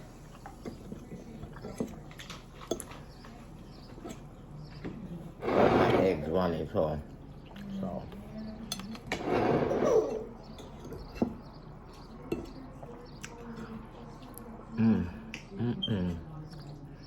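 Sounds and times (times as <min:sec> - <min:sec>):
cutlery clicking on a plate: 0:01.5 - 0:03.4, 0:08.6 - 0:09.2, 0:12.2 - 0:13.4.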